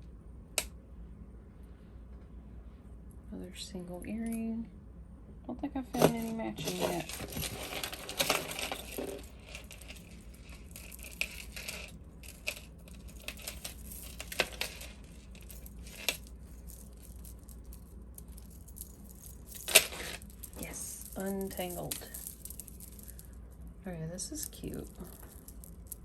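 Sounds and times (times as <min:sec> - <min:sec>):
metal jewelry clinking: 0:06.0 - 0:23.5, 0:24.3 - 0:26.0.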